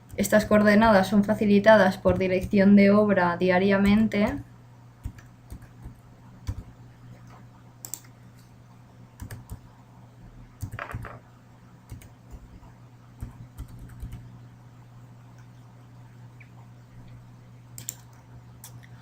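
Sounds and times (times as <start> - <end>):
low steady hum: 0.0 - 19.0
typing on a keyboard: 9.2 - 9.6, 10.6 - 11.1, 11.9 - 12.5, 13.2 - 14.2.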